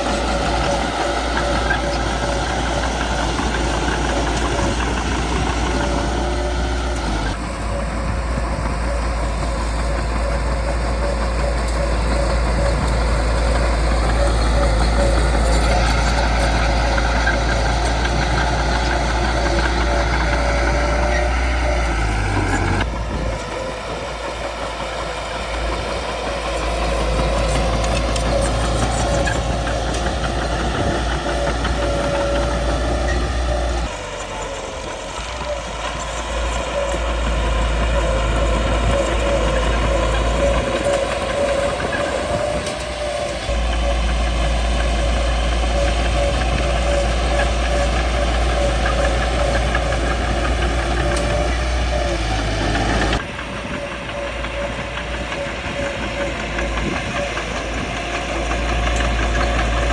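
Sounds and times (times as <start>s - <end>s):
bulldozer diesel engine droning: 0.0s - 59.9s.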